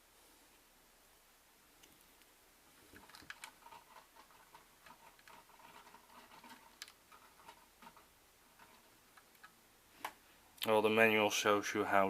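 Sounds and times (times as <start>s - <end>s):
small plastic parts clicking: 2.9s - 10.2s.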